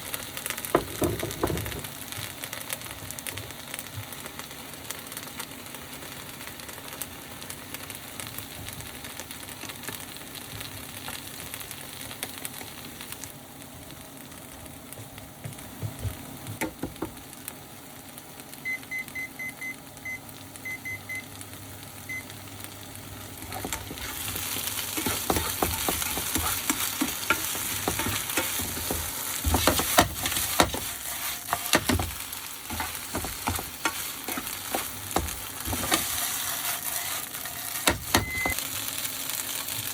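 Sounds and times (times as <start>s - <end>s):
vegetables sizzling in a frying pan: 0.0s - 39.9s
spatula scraping and knocking pan: 23.4s - 38.6s
spatula clacking against pan: 25.0s - 36.1s.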